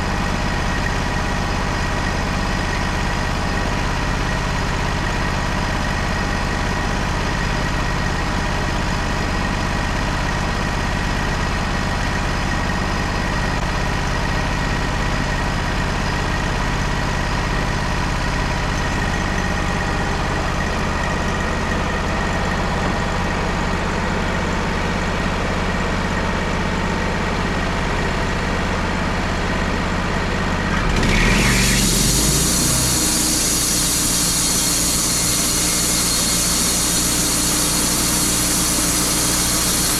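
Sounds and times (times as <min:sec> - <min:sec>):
sawmill engine running: 0:00.0 - 0:39.9
high whirring hiss: 0:31.6 - 0:39.9.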